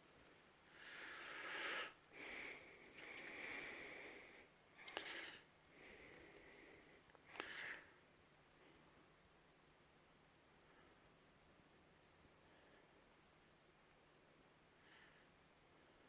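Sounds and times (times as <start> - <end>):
faint breathing: 0.6 - 9.1, 12.0 - 13.2, 14.7 - 16.0.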